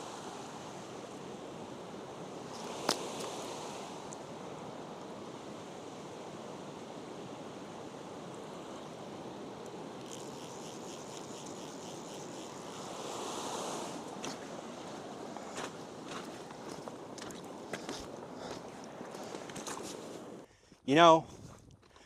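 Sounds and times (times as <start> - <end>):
rapid high-pitched ticking: 10.0 - 12.8.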